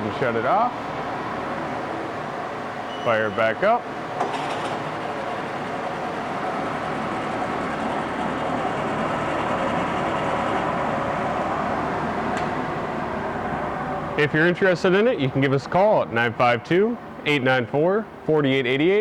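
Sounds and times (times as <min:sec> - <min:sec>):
outboard motor idling: 0:04.3 - 0:12.1.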